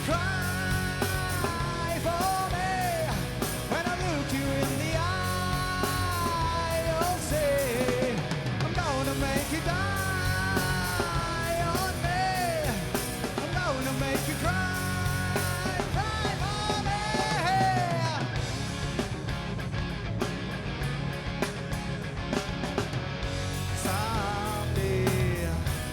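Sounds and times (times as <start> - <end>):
person singing: 0.0 - 18.3
bass guitar: 0.0 - 25.9
drum kit: 0.0 - 25.9
electric guitars: 0.0 - 25.9.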